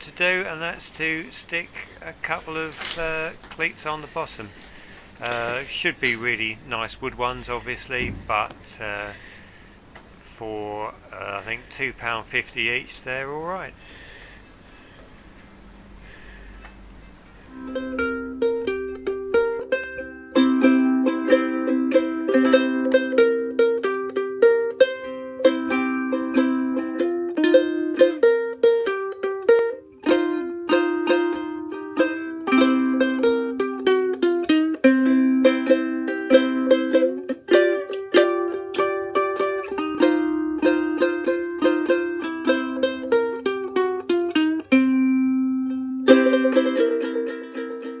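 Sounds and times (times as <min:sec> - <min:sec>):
plucked string tune: 0:05.2 - 0:09.3, 0:17.4 - 0:48.0.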